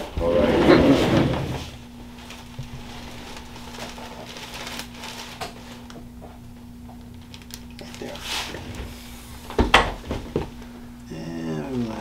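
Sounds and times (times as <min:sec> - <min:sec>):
low electrical hum: 0:00.0 - 0:12.0
faint clicks and rustles: 0:02.0 - 0:08.9.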